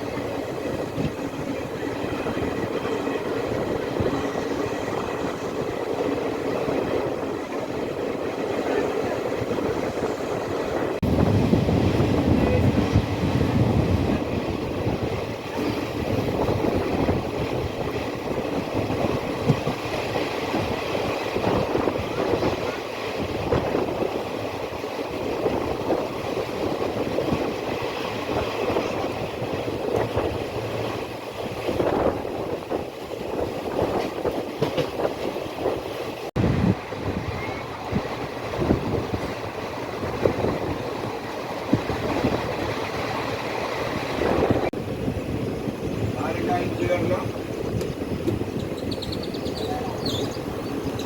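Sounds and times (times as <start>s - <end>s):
train rumbling and rattling: 0.0s - 51.0s
train wheel knocks: 33.8s - 35.4s.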